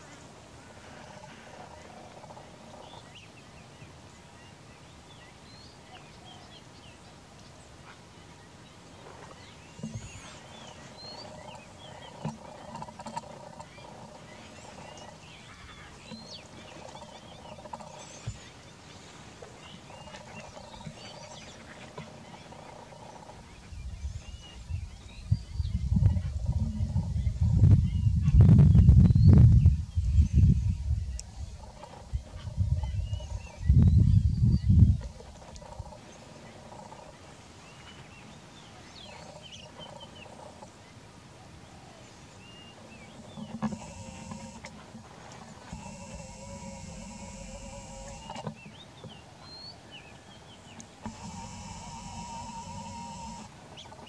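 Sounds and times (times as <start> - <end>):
chorus of wildlife calls: 0.0 - 54.0
birds chirping and whistling: 9.0 - 40.6, 42.0 - 54.0.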